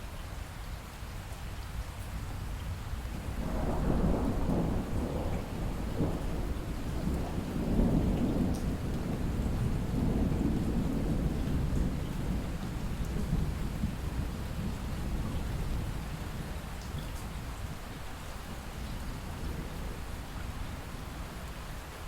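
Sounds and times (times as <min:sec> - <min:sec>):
steady rain: 0:00.0 - 0:22.0
thunder rolling: 0:03.4 - 0:15.9.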